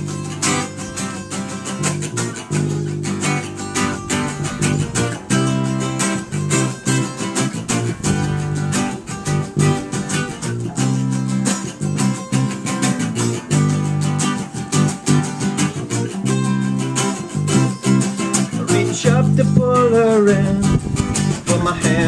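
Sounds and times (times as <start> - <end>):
bass line: 0.0 - 22.0
strummed guitar: 0.0 - 22.0
sharp regular beat strokes: 1.8 - 18.4.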